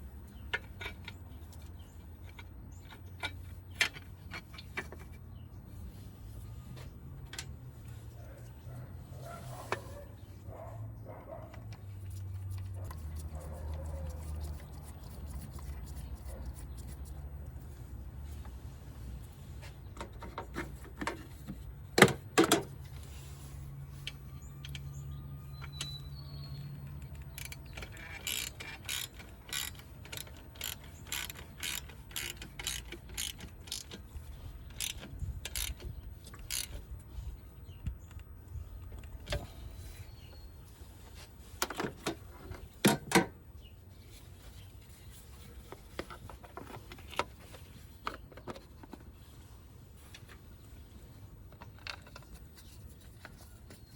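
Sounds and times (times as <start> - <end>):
hand tools clicking on metal: 26.8 - 34.1, 34.7 - 36.8.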